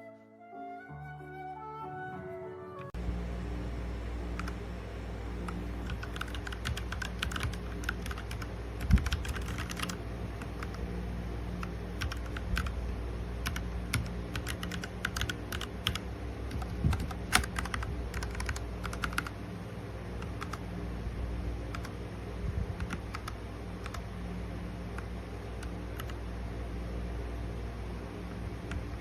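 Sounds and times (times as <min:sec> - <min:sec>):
faint low hum: 0:02.9 - 0:29.0
mechanical keyboard typing: 0:04.4 - 0:04.6, 0:05.5 - 0:10.9, 0:11.6 - 0:12.8, 0:13.4 - 0:19.3, 0:20.2 - 0:20.6, 0:21.7 - 0:22.0, 0:22.8 - 0:24.0, 0:24.9 - 0:26.2, 0:28.6 - 0:29.0.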